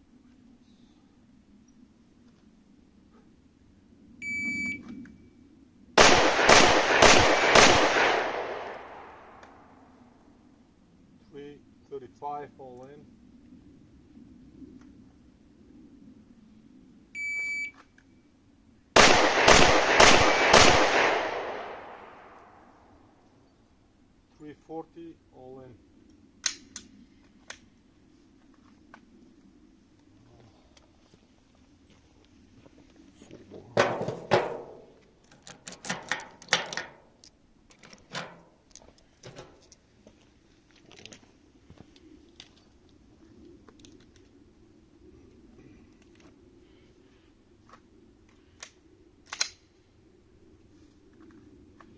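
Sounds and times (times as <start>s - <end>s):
pistol shots echoing: 6.0s - 9.4s, 19.0s - 22.7s.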